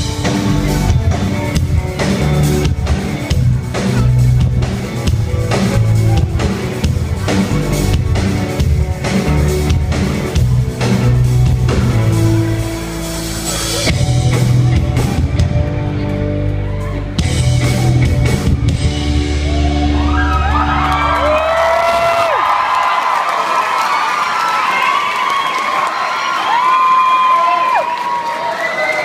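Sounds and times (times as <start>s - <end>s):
live rock band playing: 0.0s - 22.4s
crowd cheering and whooping: 14.8s - 17.6s, 19.0s - 29.0s.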